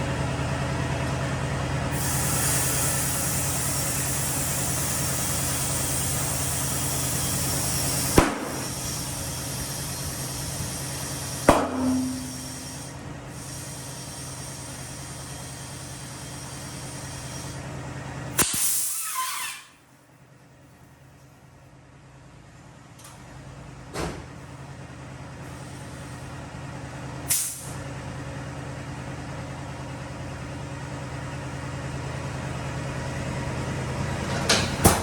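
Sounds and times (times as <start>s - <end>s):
machinery humming and hissing: 0.0s - 19.7s, 23.0s - 35.0s
air hiss burst: 2.0s - 17.6s, 18.4s - 19.4s, 27.3s - 27.7s.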